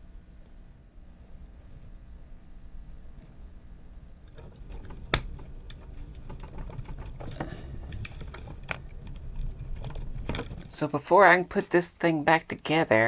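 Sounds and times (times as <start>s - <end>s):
plastic parts clicking and rattling: 4.3s - 10.8s.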